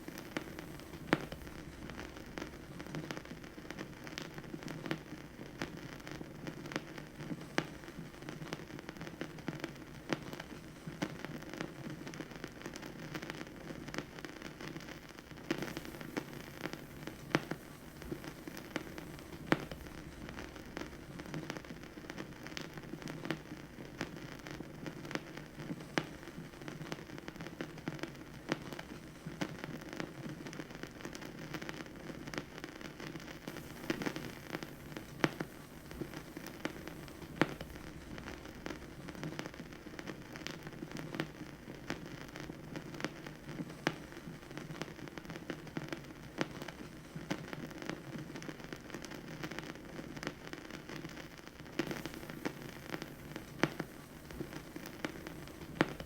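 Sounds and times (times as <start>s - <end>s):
low steady hum: 0.0s - 4.7s, 15.6s - 23.9s, 33.4s - 41.4s, 51.8s - 56.0s
vinyl record crackle and pops: 0.0s - 56.0s.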